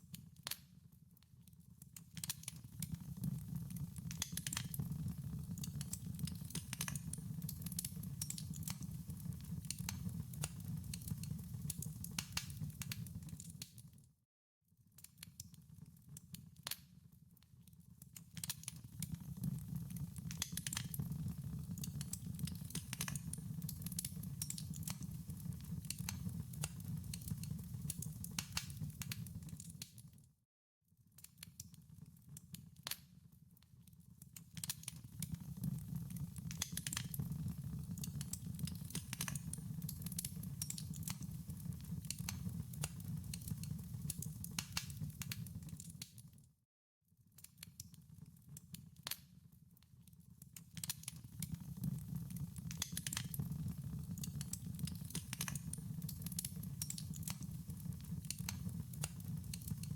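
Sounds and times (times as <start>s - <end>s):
wood fire crackling: 2.2s - 13.7s, 18.4s - 29.8s, 34.6s - 46.0s, 50.8s - 59.9s.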